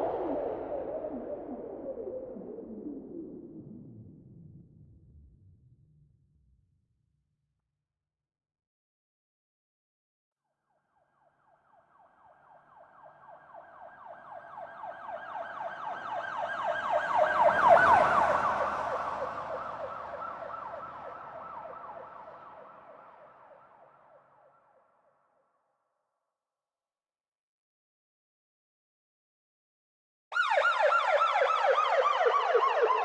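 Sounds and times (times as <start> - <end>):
police siren yelping: 12.8 - 23.3, 30.3 - 33.0.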